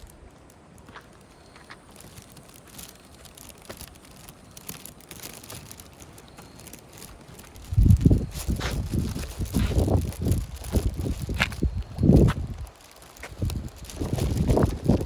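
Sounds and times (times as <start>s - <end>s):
faint rustling: 0.0s - 15.0s
light clicks and crackles: 0.0s - 15.0s.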